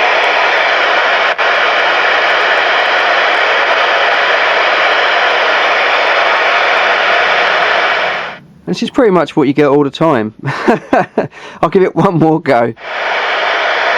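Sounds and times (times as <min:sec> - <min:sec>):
radio static hiss: 0:00.0 - 0:09.3.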